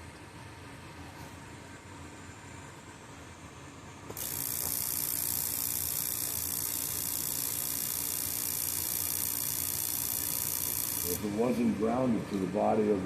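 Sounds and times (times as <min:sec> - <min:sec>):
spark igniter hissing: 0:04.1 - 0:11.4.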